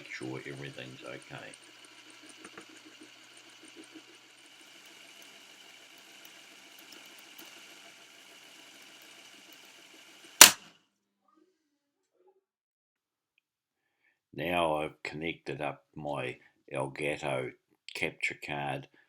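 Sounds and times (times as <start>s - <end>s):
tape rewinder whirring: 0.0s - 10.7s
loud sharp clack: 10.4s - 10.7s.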